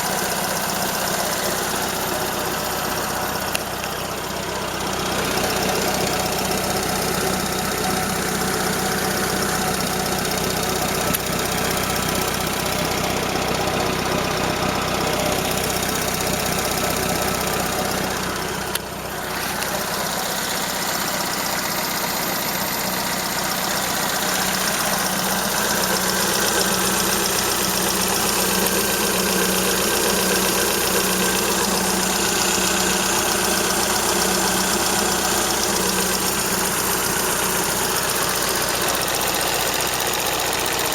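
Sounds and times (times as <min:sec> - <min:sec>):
car engine idling with knocking: 0:00.0 - 0:40.9.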